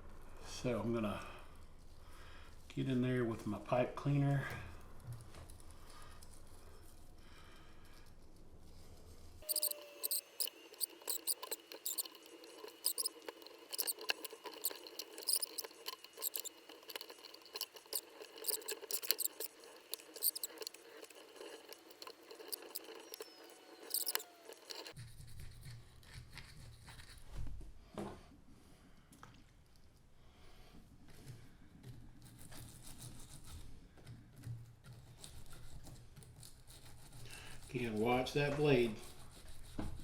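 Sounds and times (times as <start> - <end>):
squeaky scratching and clicking: 9.4 - 26.4.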